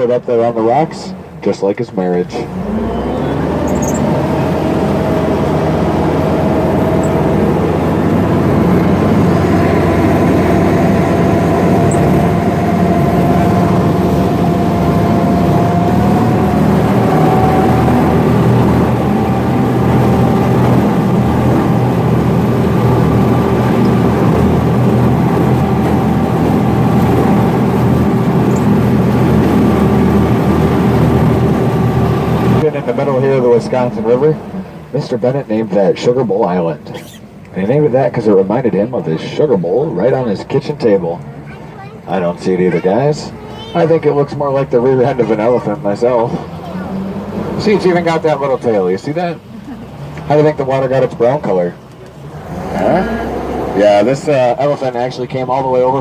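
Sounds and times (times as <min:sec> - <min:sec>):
boat engine running: 0:00.0 - 0:56.0
thin whine: 0:02.8 - 0:34.8.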